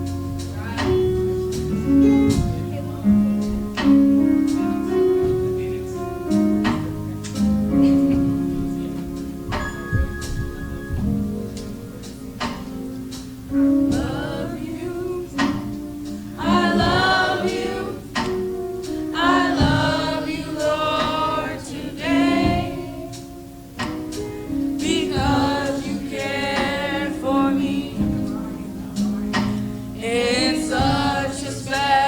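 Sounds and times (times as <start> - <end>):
sustained instrumental chords: 0.0 - 32.0
choir singing gospel song: 13.5 - 32.0.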